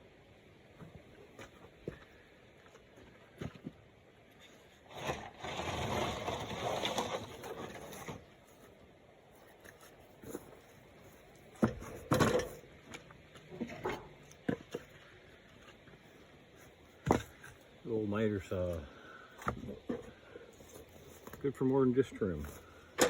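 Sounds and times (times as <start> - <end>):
wood pieces knocking and clattering: 11.6 - 15.0.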